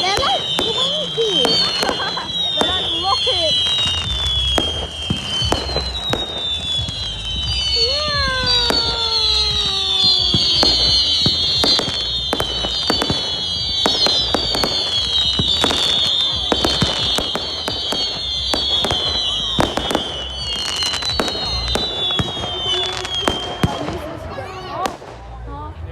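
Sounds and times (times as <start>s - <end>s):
firework whistles sliding down: 0.0s - 24.3s
fireworks popping and cracking: 0.0s - 25.9s.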